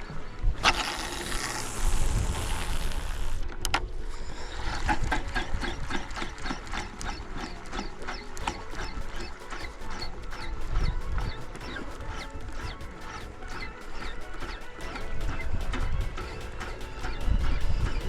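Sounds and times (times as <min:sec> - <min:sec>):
fishing reel clicking: 0:00.6 - 0:03.4
hiss: 0:00.7 - 0:03.4.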